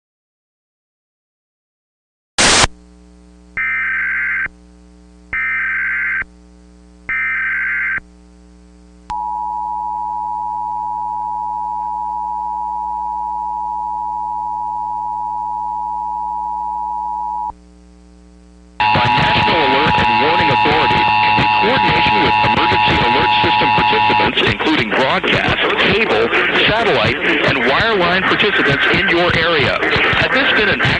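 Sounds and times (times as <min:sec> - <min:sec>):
loud noise burst: 0:02.4 - 0:02.8, 0:18.8 - 0:30.9
faint steady hum: 0:02.4 - 0:28.2
two-tone attention signal: 0:18.8 - 0:24.6
digital header tones: 0:18.8 - 0:25.2.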